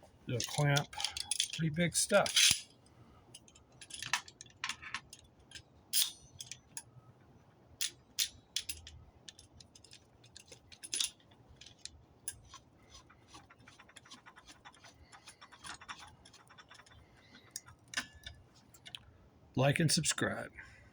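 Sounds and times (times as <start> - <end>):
metal clamp clicking: 0.4 - 1.6, 2.2 - 2.7, 3.4 - 6.9, 7.8 - 12.6.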